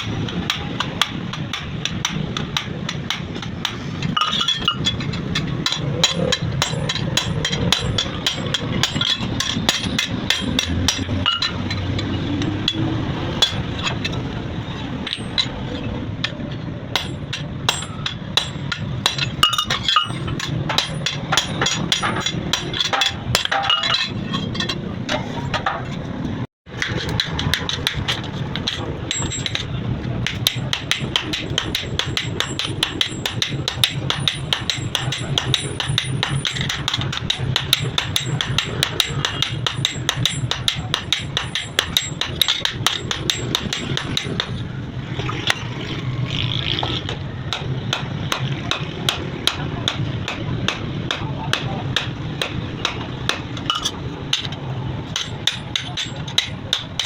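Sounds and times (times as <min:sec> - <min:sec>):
hammer striking steel on anvil: 0:00.0 - 0:25.8, 0:26.7 - 0:45.6, 0:46.8 - 0:57.0.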